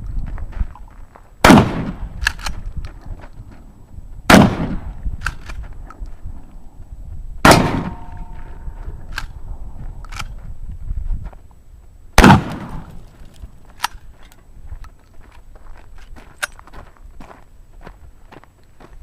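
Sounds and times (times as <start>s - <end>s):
shotgun blasts: 1.4s - 2.6s, 4.3s - 5.6s, 7.4s - 8.6s, 12.2s - 13.0s
metallic ring: 7.9s - 8.8s.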